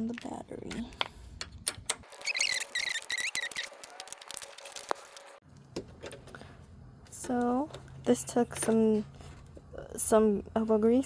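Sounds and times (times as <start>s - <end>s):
high squeaks: 2.0s - 5.3s.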